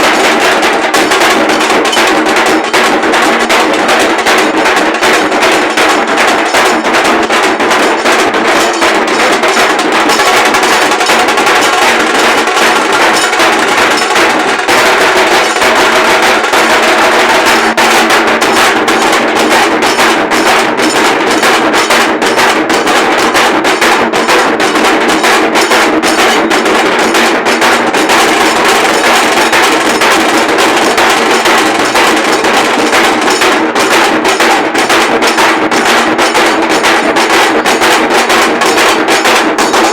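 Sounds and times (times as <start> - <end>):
drum ensemble playing fast beat: 0.0 - 39.9.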